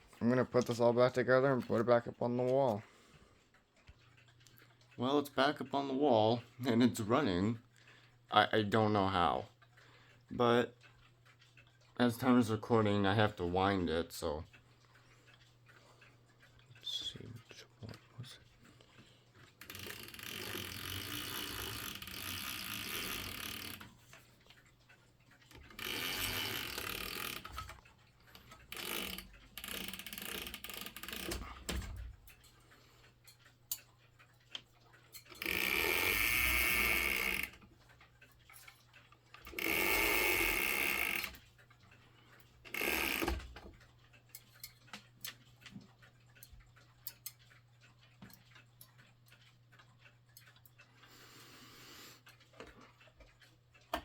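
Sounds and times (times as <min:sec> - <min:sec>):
clock ticking: 0:00.0 - 0:54.0
clock winding ratchet clicking: 0:19.4 - 0:51.5.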